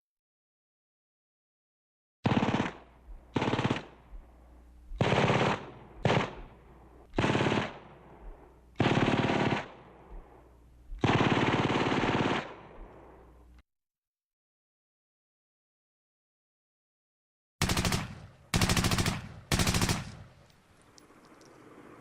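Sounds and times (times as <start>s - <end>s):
machine gun bursts: 2.2s - 4.0s, 5.0s - 6.5s, 8.8s - 9.8s, 11.0s - 12.6s, 17.6s - 20.4s.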